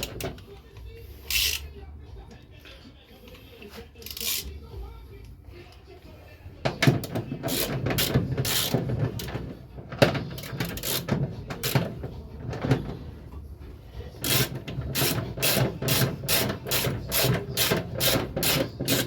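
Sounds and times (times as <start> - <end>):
ratchet wrench clicking: 1.3 - 1.7, 4.0 - 4.6, 6.8 - 9.3, 10.3 - 12.0, 14.2 - 19.0.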